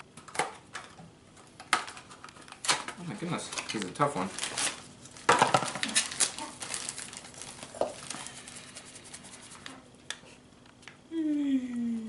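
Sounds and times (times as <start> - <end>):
wrapper crinkling and tearing: 2.6 - 9.7.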